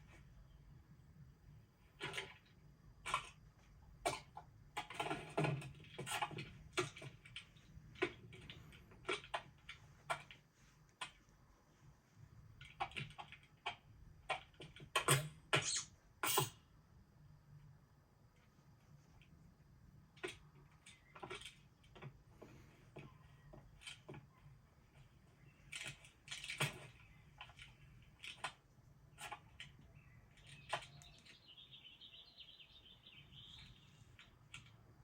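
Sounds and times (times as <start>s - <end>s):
objects clicking and clattering: 1.8s - 11.3s.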